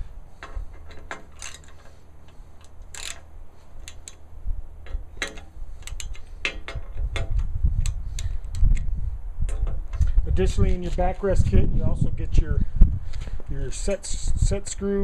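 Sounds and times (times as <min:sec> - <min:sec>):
ratchet clicking: 0:02.6 - 0:04.2, 0:04.9 - 0:08.8.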